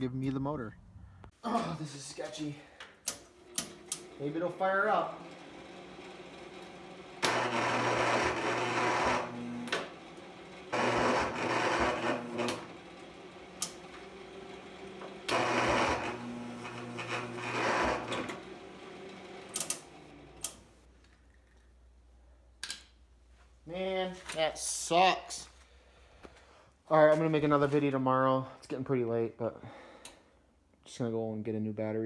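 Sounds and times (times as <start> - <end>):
electric starter cranking engine: 3.1 - 20.8
clicks: 19.5 - 21.7.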